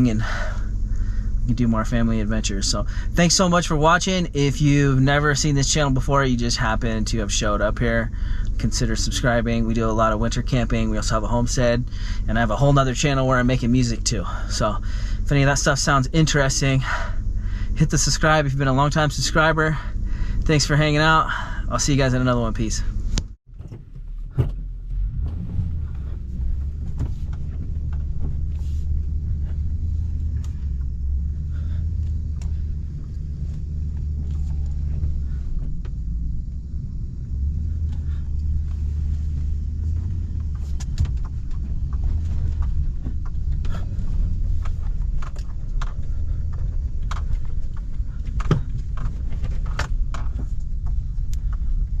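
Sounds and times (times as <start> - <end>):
pickup truck engine and tyres rumbling: 0.0 - 52.0
light clicks and rattles: 37.4 - 52.0.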